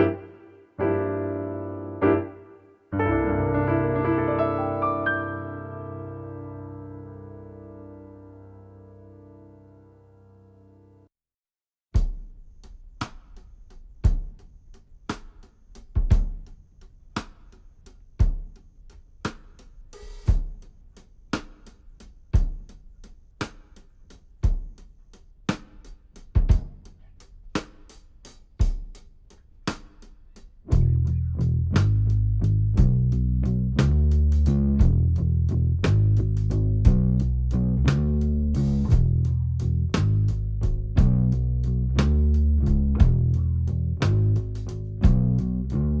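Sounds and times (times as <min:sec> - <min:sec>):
bass line: 0:02.9 - 0:09.6, 0:30.7 - 0:46.0
drum kit hits: 0:34.8 - 0:35.2, 0:38.8 - 0:39.3, 0:40.0 - 0:41.4, 0:42.0 - 0:45.4.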